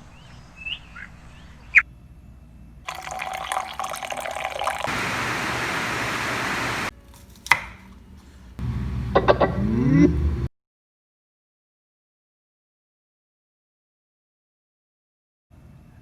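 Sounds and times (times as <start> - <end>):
tap water splashing: 2.9 - 6.9
vessel filling with water: 2.9 - 6.9.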